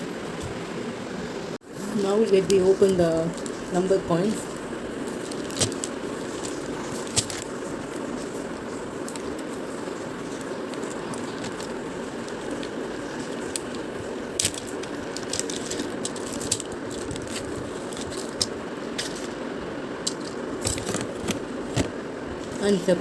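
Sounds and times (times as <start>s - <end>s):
plastic coins clicking and crackling: 10.8s - 19.3s.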